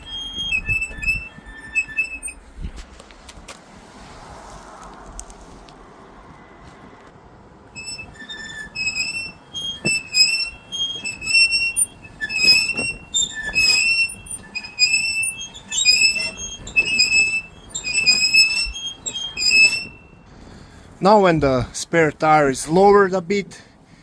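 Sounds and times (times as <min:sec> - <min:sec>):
spare tire hoist cranking squeaks: 0:00.0 - 0:02.7, 0:07.6 - 0:20.8.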